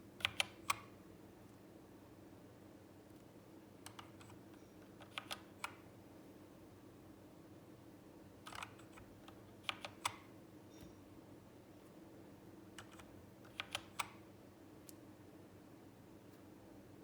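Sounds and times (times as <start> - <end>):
faint steady hum: 0.0 - 17.0
keyboard keystroke clicks: 0.2 - 0.9, 3.8 - 5.8, 8.5 - 11.0, 12.8 - 14.2.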